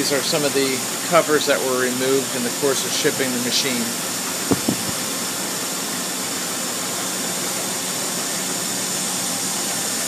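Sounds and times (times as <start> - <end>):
steady rushing air noise: 4.4 - 5.2
low knocks: 4.5 - 5.0.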